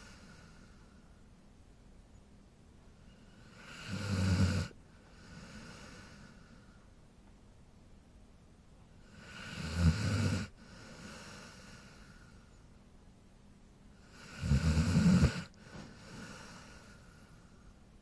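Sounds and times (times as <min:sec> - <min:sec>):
dog snoring: 0:03.2 - 0:06.4, 0:09.0 - 0:12.2, 0:14.0 - 0:17.0.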